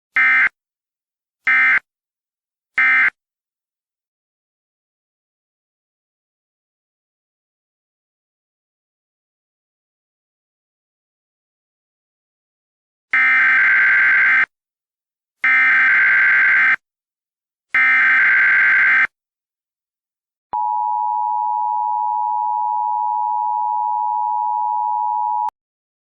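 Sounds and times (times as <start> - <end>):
two-tone attention signal: 20.6 - 25.5.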